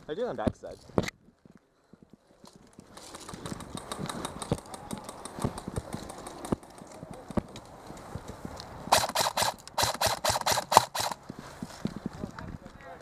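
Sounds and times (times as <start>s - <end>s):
airsoft gun shots: 8.9s - 11.2s.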